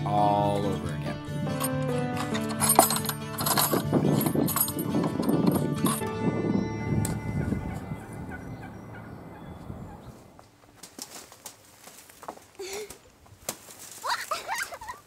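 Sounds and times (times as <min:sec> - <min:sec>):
music: 0:00.0 - 0:09.3
chickens calling: 0:06.9 - 0:10.7, 0:13.9 - 0:15.0.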